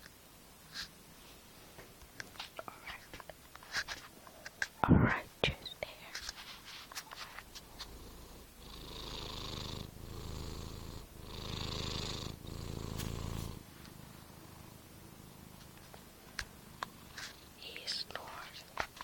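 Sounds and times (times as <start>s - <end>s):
cat snoring: 7.7s - 15.6s.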